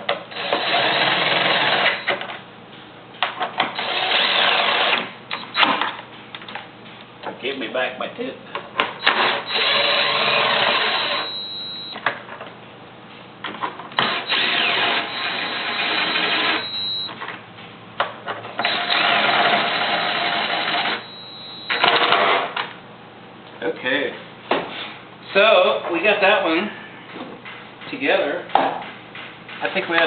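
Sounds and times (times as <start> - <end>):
power drill driving screws: 0.3 - 2.1, 3.8 - 5.7, 9.0 - 11.4, 14.0 - 17.1, 18.6 - 21.1.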